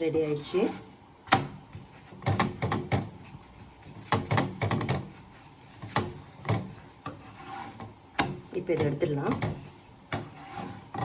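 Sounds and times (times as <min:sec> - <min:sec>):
spatula tapping on griddle: 0:01.3 - 0:03.2, 0:04.0 - 0:05.2.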